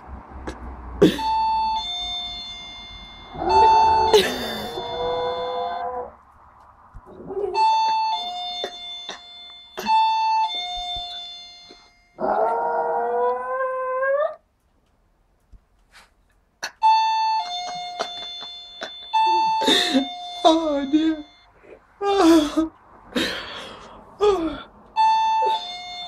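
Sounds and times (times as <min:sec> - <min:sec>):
doorbell two-note chime: 0:01.4 - 0:05.9, 0:07.6 - 0:12.2, 0:16.8 - 0:21.5
dog howling: 0:03.4 - 0:06.2, 0:12.2 - 0:14.4.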